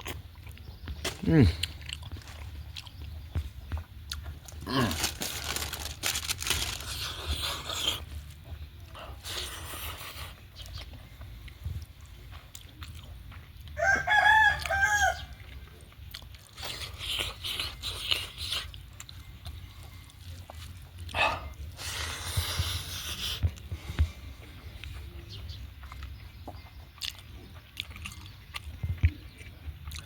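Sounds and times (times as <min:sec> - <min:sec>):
chewing and crunching food: 0:00.0 - 0:30.0
rooster crowing: 0:13.8 - 0:15.4.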